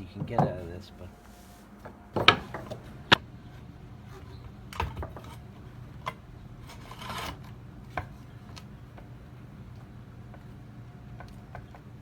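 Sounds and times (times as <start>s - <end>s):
wood and tool knocks: 0.0s - 0.9s, 1.8s - 2.9s
steady low hum: 0.0s - 12.0s.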